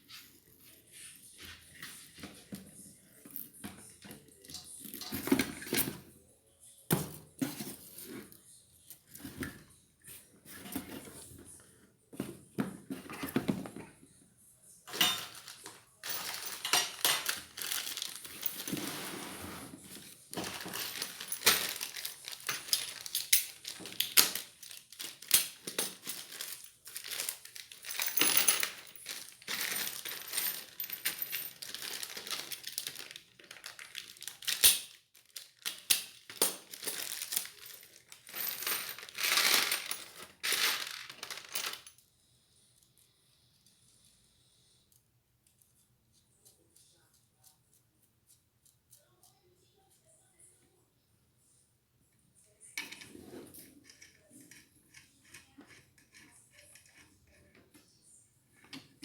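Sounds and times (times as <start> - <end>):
small hard pieces clinking: 14.9 - 18.7, 35.6 - 41.9
rustling: 14.9 - 25.3.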